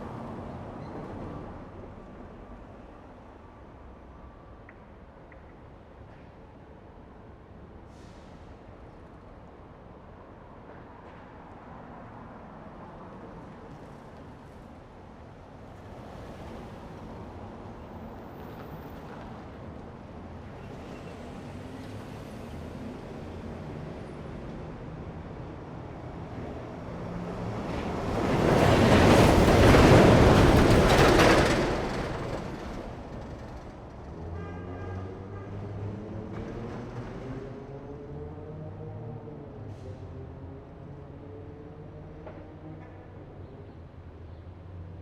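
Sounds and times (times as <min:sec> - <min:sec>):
city traffic: 0:00.0 - 0:45.0.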